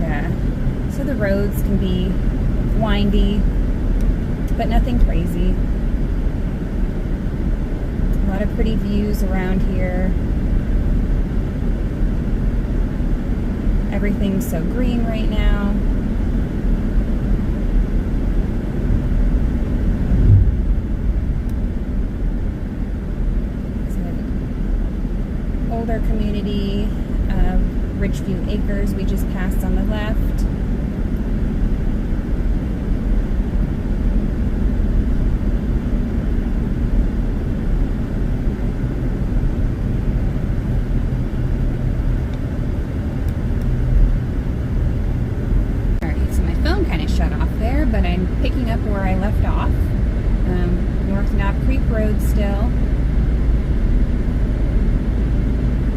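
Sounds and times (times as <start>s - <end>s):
car engine and tyre rumble: 0.0s - 55.9s
low bump: 19.9s - 21.8s.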